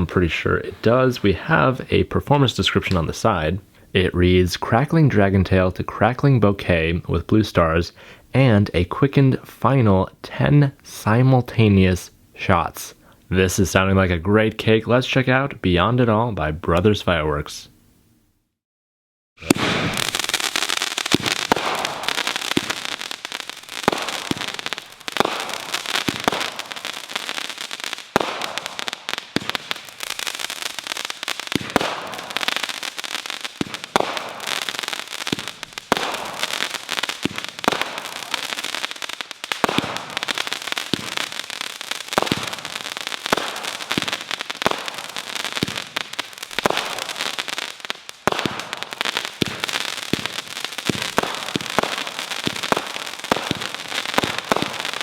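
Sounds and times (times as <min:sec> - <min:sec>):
firework launch pops: 0:19.4 - 0:22.8, 0:23.8 - 0:26.8, 0:28.1 - 0:30.0, 0:31.5 - 0:32.7, 0:33.5 - 0:38.7, 0:39.5 - 0:41.5, 0:42.1 - 0:47.4, 0:48.2 - 0:55.0
firework crackling: 0:19.4 - 0:55.0.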